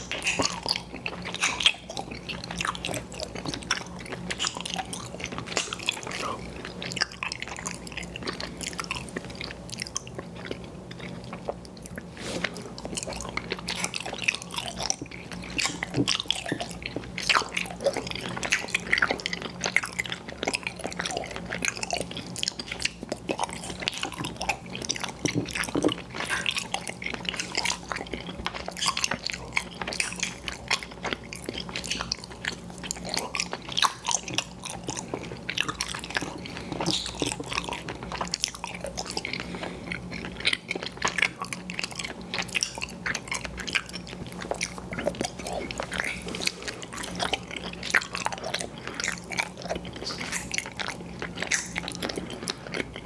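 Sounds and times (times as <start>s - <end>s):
chewing candy: 0.0s - 53.0s.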